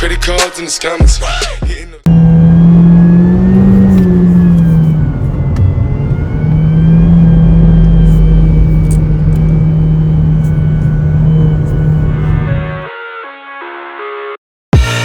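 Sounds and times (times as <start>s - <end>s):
car engine running: 2.1s - 12.8s.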